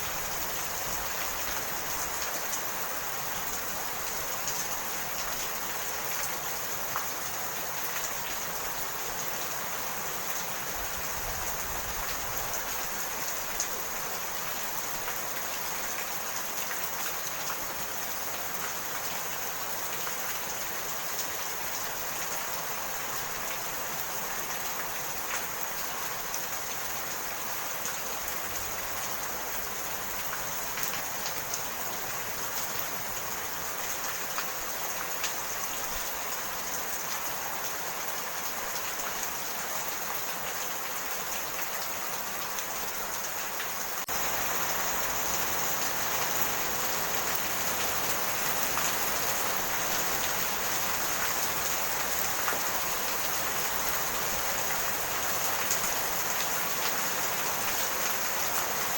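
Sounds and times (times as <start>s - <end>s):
steady rain hiss: 0.0s - 58.9s.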